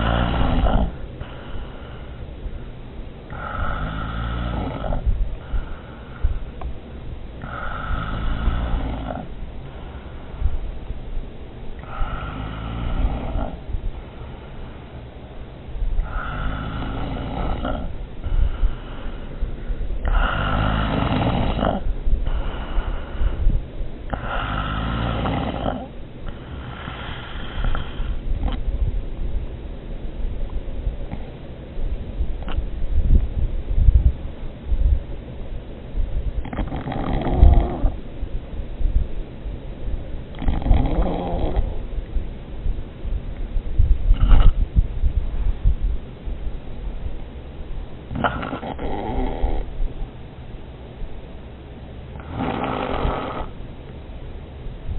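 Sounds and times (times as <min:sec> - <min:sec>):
person snoring loudly: 0:00.0 - 0:01.6, 0:03.3 - 0:05.8, 0:07.4 - 0:09.4, 0:11.8 - 0:13.7, 0:16.0 - 0:17.9, 0:20.0 - 0:22.7, 0:24.1 - 0:28.6, 0:36.4 - 0:38.0, 0:40.4 - 0:41.8, 0:48.1 - 0:49.7, 0:52.2 - 0:53.6
soft short breaths: 0:00.0 - 0:06.8, 0:07.4 - 0:11.2, 0:11.8 - 0:15.4, 0:18.1 - 0:21.0, 0:21.8 - 0:25.0, 0:26.2 - 0:28.4.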